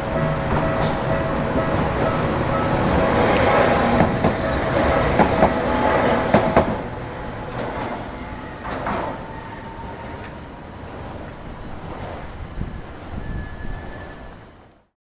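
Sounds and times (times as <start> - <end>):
crossing bell ringing: 0.0 - 11.2
tram wheels clacking over rail joints: 0.0 - 14.2.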